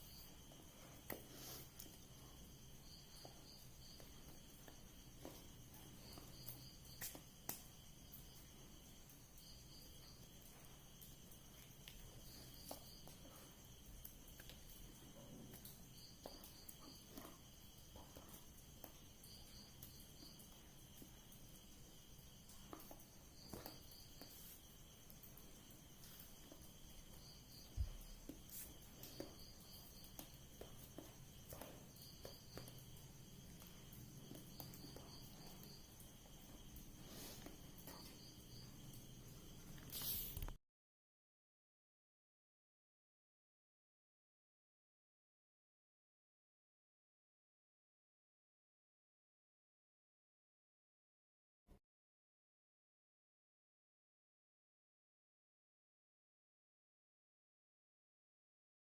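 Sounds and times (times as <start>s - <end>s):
insect chirring drone: 0.0s - 40.6s.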